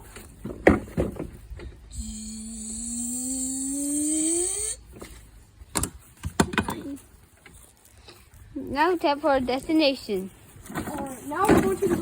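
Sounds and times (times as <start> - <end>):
person imitating pumping gas: 1.9 - 4.8.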